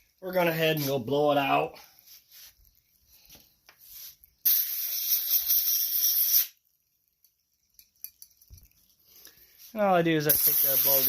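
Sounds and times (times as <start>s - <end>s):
compressed air blow gun hissing: 3.8s - 6.6s, 10.3s - 11.0s.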